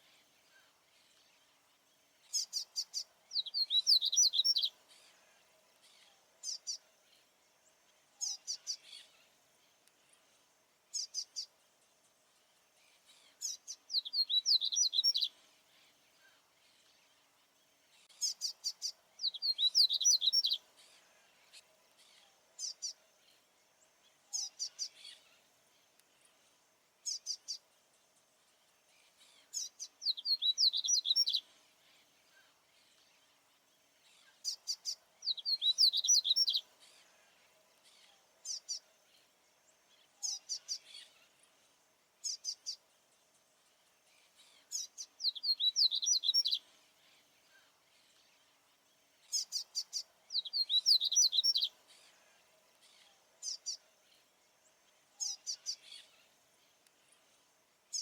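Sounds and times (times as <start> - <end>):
seedeater bird singing: 2.3 - 4.8, 13.2 - 15.4, 18.0 - 20.6, 29.3 - 31.5, 34.2 - 36.7, 44.5 - 46.7, 49.3 - 52.1.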